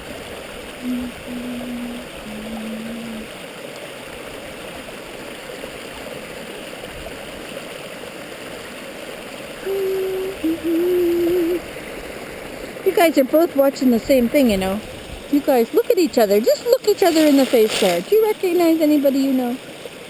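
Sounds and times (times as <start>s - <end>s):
stream flowing over rocks: 0.0s - 20.0s
long steady tones: 0.8s - 3.4s, 9.6s - 11.7s.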